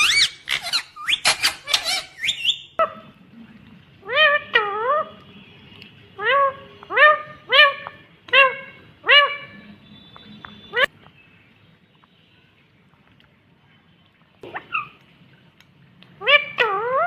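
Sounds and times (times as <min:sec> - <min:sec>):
parakeet calls: 0:00.0 - 0:03.0, 0:06.2 - 0:10.9.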